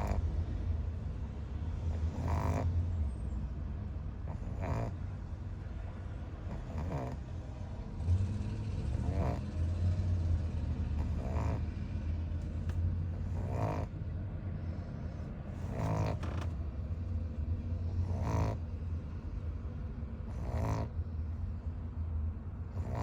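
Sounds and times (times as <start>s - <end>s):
car hum: 7.8s - 22.8s
person snoring: 15.6s - 16.2s.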